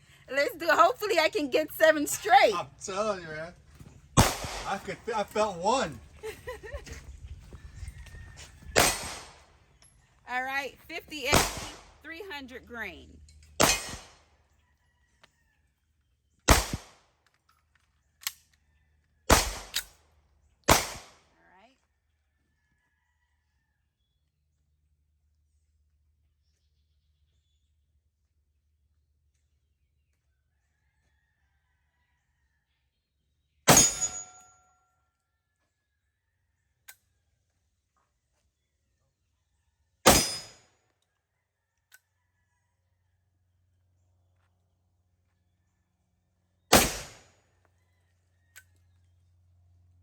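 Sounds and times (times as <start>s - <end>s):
pistol shot with echo: 4.2s - 4.9s, 8.8s - 9.5s, 11.3s - 12.0s, 13.6s - 14.2s, 16.5s - 17.0s, 19.3s - 19.9s, 20.7s - 21.2s, 33.7s - 34.4s, 40.1s - 40.6s, 46.7s - 47.3s
metallic ring: 33.7s - 34.7s.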